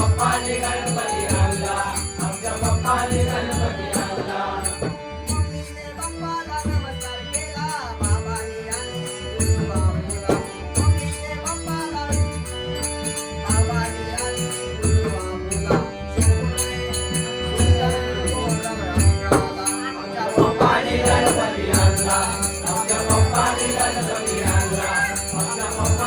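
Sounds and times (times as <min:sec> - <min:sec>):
small hand cymbals: 0:21.9 - 0:26.0.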